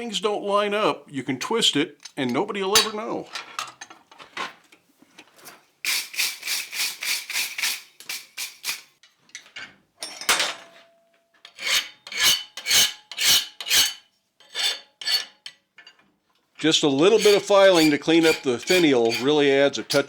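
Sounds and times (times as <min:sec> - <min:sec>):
hand file scraping steel: 0:11.5 - 0:15.5, 0:16.6 - 0:20.0.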